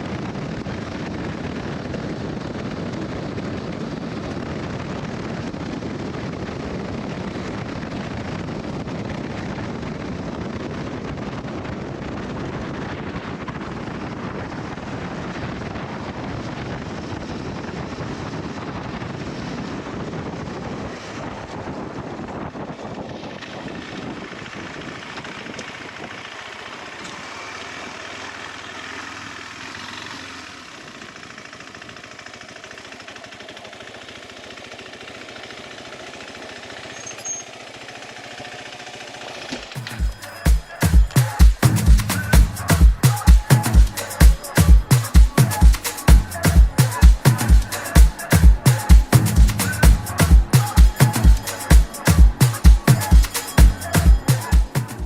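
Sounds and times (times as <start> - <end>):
wind rushing over microphone: 0.0 - 26.3
motorcycle engine running: 0.0 - 55.0.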